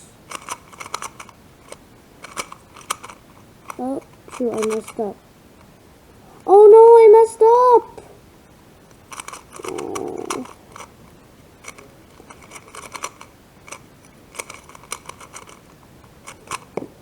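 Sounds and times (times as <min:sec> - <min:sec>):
puzzle cube layers clicking: 0:00.3 - 0:05.1, 0:09.0 - 0:10.9, 0:11.6 - 0:17.0.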